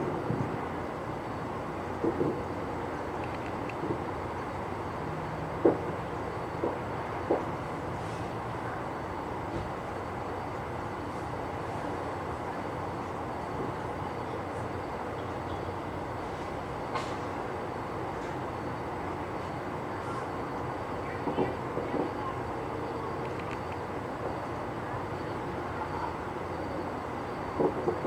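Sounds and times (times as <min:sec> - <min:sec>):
distant fireworks popping: 0:02.0 - 0:04.1, 0:05.5 - 0:07.6, 0:21.2 - 0:22.4, 0:27.5 - 0:28.0.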